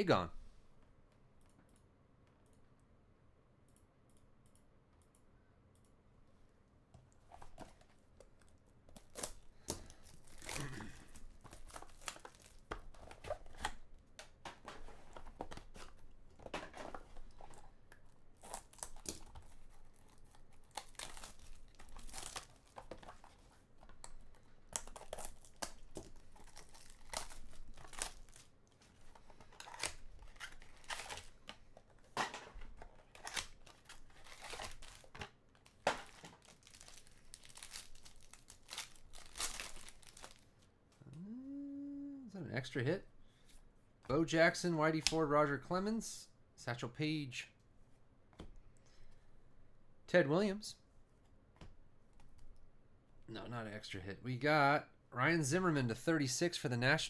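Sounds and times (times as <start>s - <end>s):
packaging tearing and crinkling: 9.0s - 13.8s, 18.3s - 31.9s, 32.6s - 40.5s.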